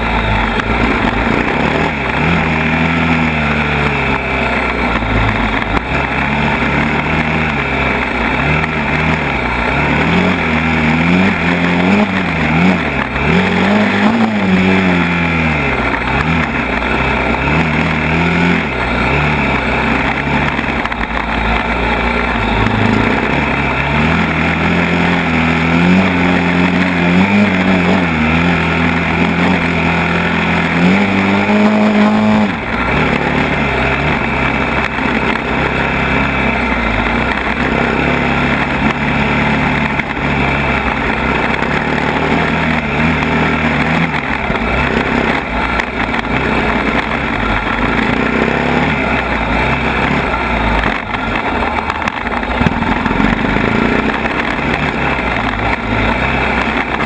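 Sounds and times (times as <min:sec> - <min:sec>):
atv engine revving: 0:00.0 - 0:57.0.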